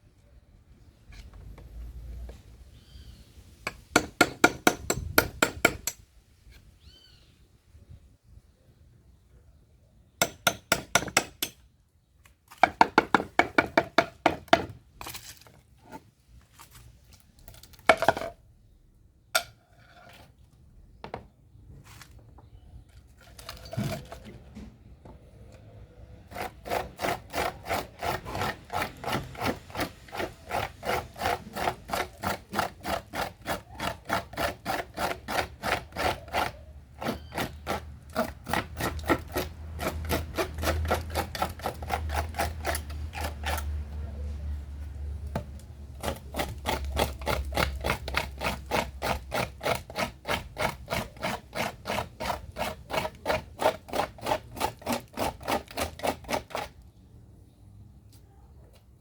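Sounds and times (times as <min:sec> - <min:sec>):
hand saw strokes on wood: 0:03.7 - 0:06.7, 0:26.2 - 0:44.6, 0:45.4 - 0:56.8
scrapes and knocks: 0:12.5 - 0:18.4, 0:19.4 - 0:25.3.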